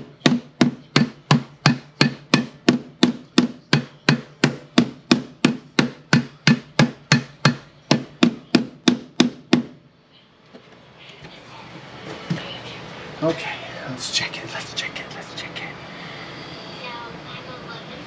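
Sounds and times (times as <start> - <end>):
hammer striking sheet steel: 0.2 - 9.7.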